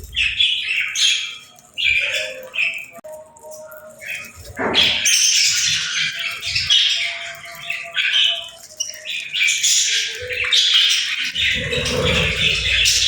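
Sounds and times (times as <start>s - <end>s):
budgerigars chirping: 0.0s - 2.9s.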